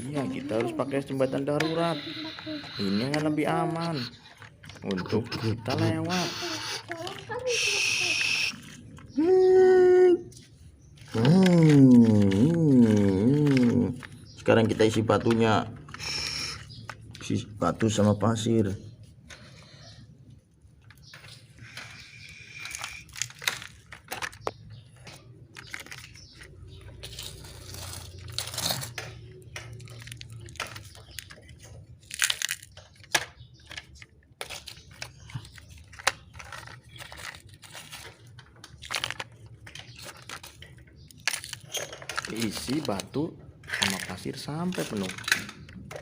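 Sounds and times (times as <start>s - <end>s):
pebbles rattling against plastic: 10.9s - 17.5s, 20.8s - 46.0s.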